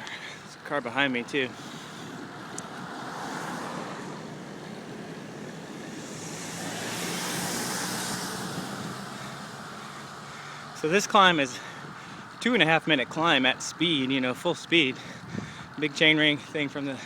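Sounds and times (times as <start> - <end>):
car passing by: 1.5 - 11.7.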